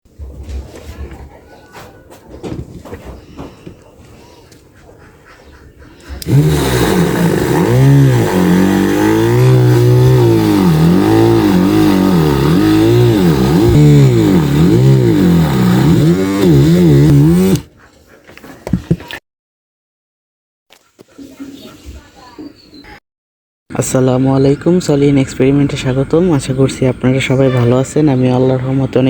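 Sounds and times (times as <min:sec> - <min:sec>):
motor drill whining: 0:06.2 - 0:17.7.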